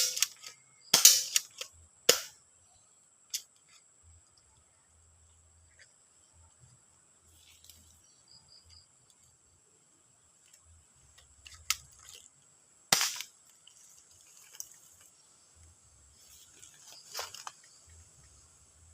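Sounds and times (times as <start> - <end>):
airsoft gun shot: 0.9 - 2.4, 12.9 - 13.3.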